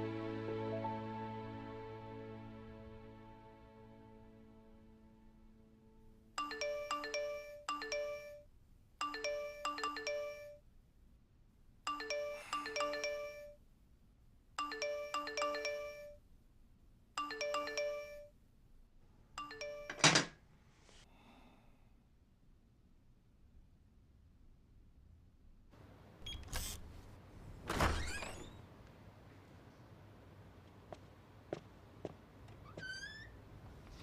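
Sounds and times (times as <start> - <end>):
phone ringtone chiming melody: 6.4 - 8.4, 9.0 - 10.6, 11.9 - 13.6, 14.6 - 16.2, 17.2 - 18.3, 19.4 - 20.1.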